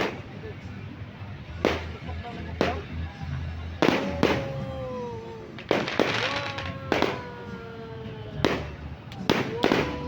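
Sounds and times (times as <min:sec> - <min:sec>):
fireworks bangs: 0:03.7 - 0:04.8, 0:05.5 - 0:07.5, 0:08.4 - 0:10.0.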